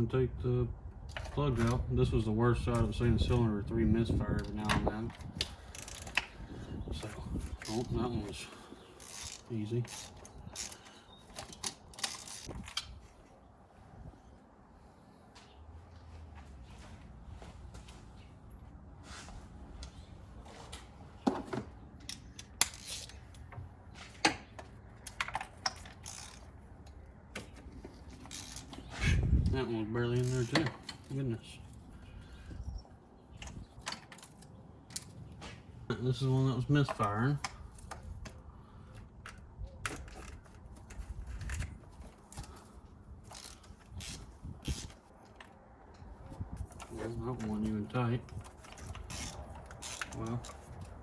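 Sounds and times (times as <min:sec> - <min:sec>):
hand tools clicking and scraping: 0:04.4 - 0:13.3, 0:20.7 - 0:32.4, 0:33.4 - 0:51.0
hand tools clicking on metal: 0:48.2 - 0:51.0.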